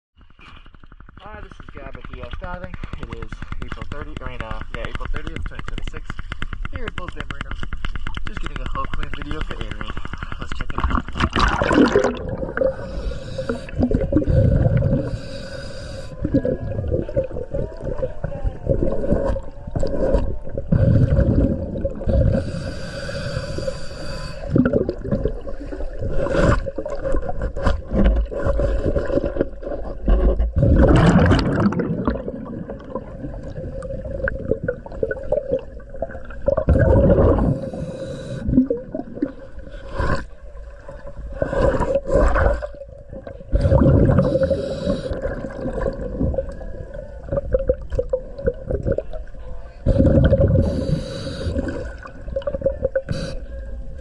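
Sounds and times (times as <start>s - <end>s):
bubbly exhalations: 8.2s - 40.4s, 41.3s - 53.6s
diver breathing through regulator: 11.4s - 17.4s, 18.8s - 27.6s, 36.8s - 40.4s, 43.5s - 45.6s, 49.8s - 52.1s, 53.0s - 53.6s.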